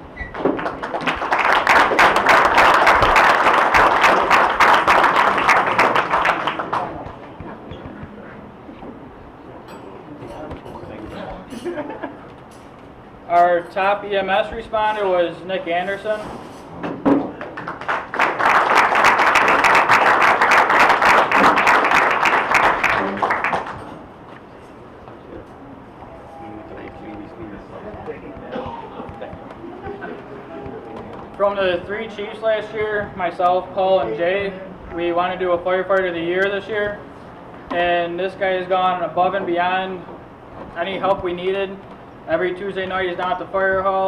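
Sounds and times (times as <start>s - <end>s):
audience applauding: 0.3s - 7.2s, 17.3s - 24.0s.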